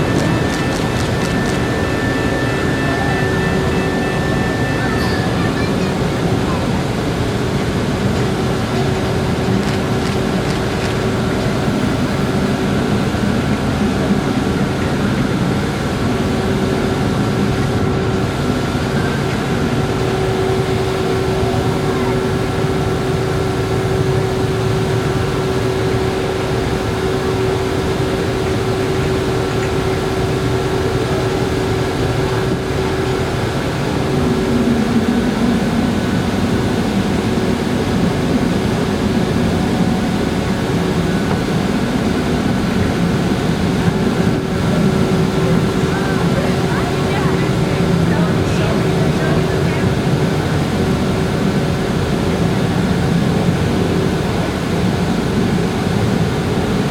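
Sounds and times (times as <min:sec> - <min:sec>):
low wavering tone: 0:00.0 - 0:07.1
ship engines droning: 0:00.0 - 0:56.9.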